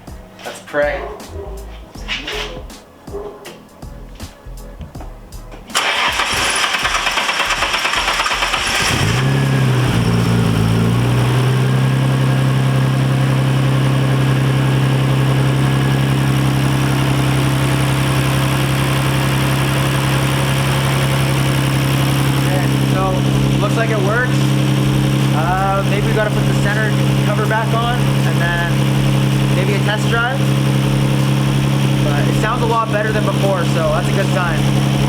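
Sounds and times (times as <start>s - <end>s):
car engine revving and idling: 3.9s - 35.0s
starter motor cranking: 5.7s - 11.1s.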